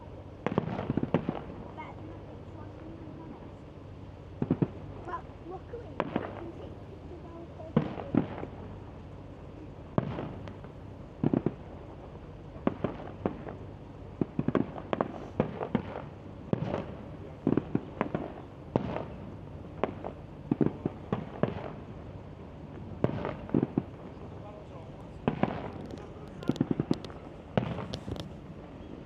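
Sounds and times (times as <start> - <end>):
background murmur: 0.0 - 29.0
fireworks bangs: 0.4 - 1.6, 12.6 - 13.6, 14.2 - 21.9, 23.0 - 28.3.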